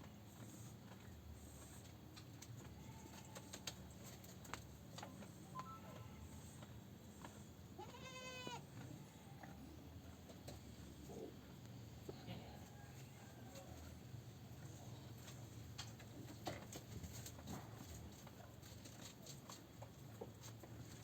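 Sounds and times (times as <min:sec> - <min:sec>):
goat bleating: 0:07.8 - 0:09.5.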